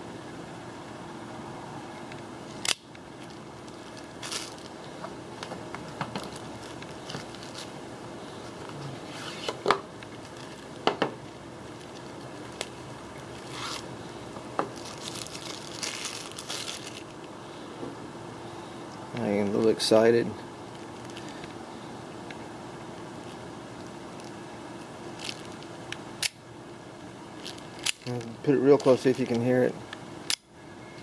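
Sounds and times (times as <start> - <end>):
faint steady hum: 0.0 - 31.0
packaging torn and crinkled: 3.2 - 4.8, 14.7 - 17.2.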